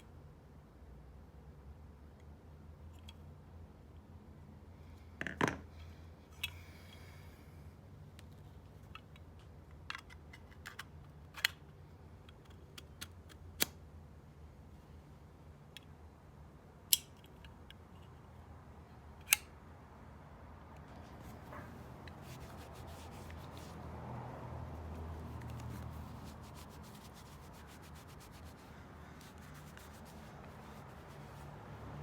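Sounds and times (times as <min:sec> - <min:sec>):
soft rubbing: 0:21.0 - 0:24.1, 0:24.7 - 0:31.9.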